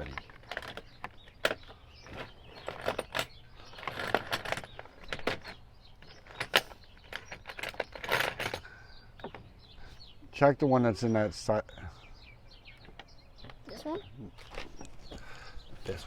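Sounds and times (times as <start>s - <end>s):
hand tools clinking on metal: 0.0s - 9.4s
metal rattle: 0.0s - 9.5s.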